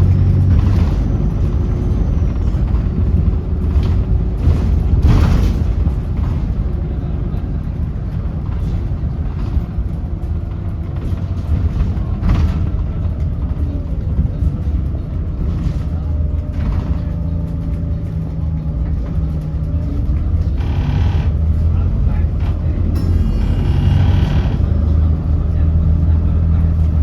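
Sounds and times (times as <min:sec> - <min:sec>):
bus diesel engine rumbling: 0:00.0 - 0:27.0
knocks and rattles: 0:00.3 - 0:13.6.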